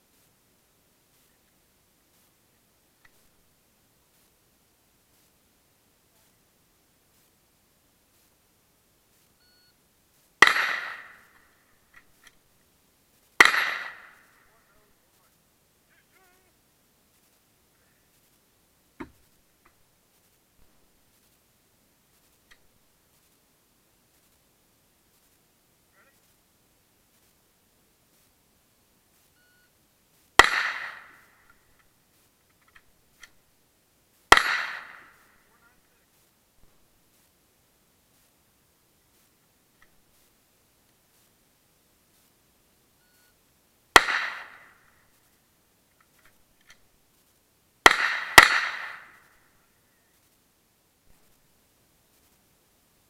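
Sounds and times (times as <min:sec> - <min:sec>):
rifle shot echoing: 0:10.4 - 0:11.5, 0:13.4 - 0:14.4, 0:30.4 - 0:31.6, 0:34.3 - 0:35.3, 0:43.9 - 0:44.8, 0:47.8 - 0:49.3.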